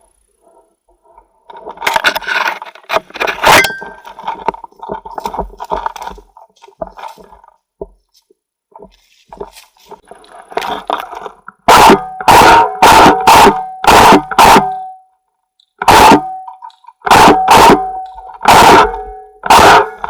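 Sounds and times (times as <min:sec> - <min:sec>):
scraping and rattling: 0:00.4 - 0:07.6, 0:08.7 - 0:11.7.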